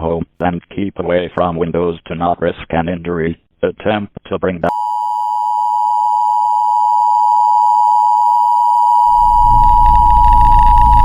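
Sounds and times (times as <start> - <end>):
steady electronic tone: 9.0 - 11.0
low noise: 9.1 - 11.0.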